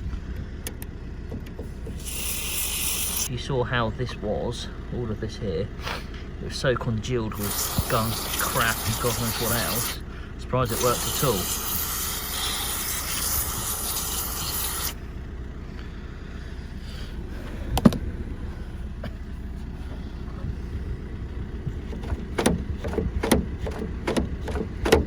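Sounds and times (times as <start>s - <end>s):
hissing scrubbing noise: 1.9s - 3.3s, 7.3s - 15.0s
metal clicks and knocks: 21.7s - 25.0s.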